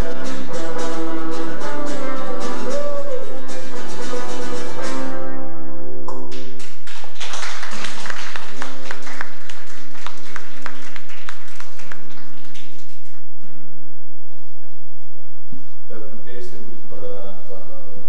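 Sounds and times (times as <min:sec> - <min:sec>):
guitar chords and strokes: 0:00.0 - 0:06.3.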